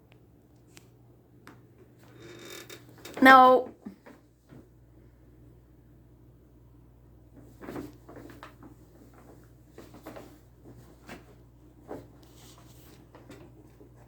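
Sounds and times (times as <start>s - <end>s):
cats scuffling thumps and scrapes: 7.4s - 14.0s.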